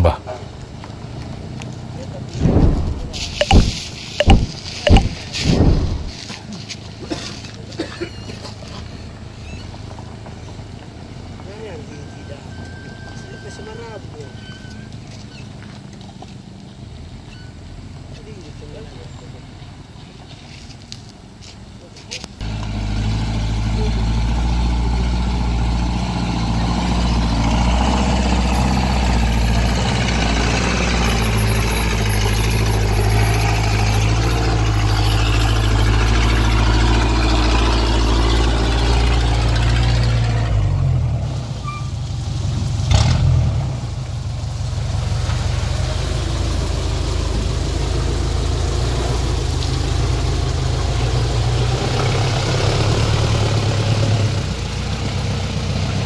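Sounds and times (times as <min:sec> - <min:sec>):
truck engines running: 0:00.0 - 0:56.0
sharp bang: 0:02.4 - 0:06.2.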